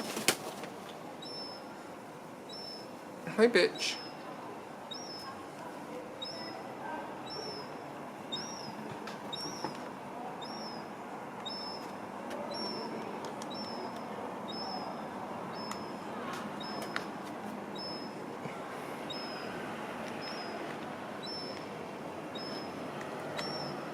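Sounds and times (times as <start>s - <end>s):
city background hum: 0.0s - 23.9s
gull fledgling begging calls: 2.5s - 2.9s, 3.7s - 4.3s, 4.9s - 5.4s, 6.2s - 9.7s, 10.4s - 11.8s, 12.5s - 16.9s, 17.7s - 18.2s, 19.1s - 19.6s, 20.2s - 20.6s, 21.2s - 21.6s, 22.3s - 22.8s, 23.4s - 23.9s.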